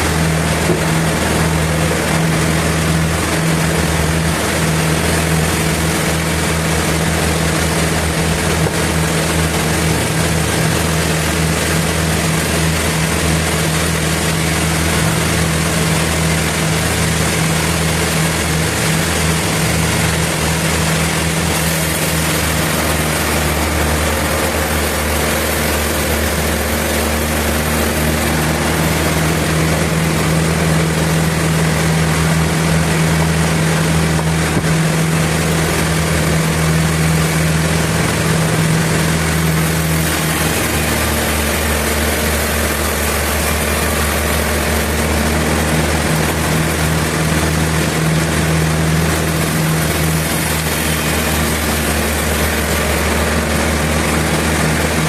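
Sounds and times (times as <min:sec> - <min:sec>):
sawmill machinery drone: 0:00.0 - 0:55.0.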